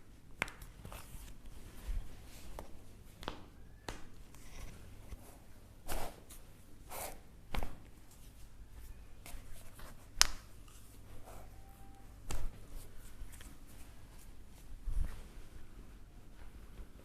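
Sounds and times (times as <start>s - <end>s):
hands and clothing rubbing: 4.3s - 17.0s.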